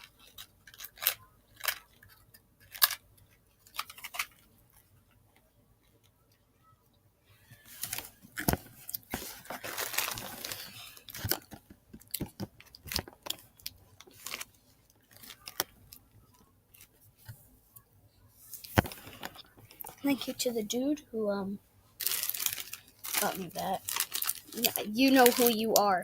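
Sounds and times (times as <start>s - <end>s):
person crunching candy: 0.0s - 3.0s, 12.1s - 14.5s, 15.1s - 15.8s, 22.0s - 25.8s
rustling: 7.4s - 16.0s, 22.0s - 25.9s.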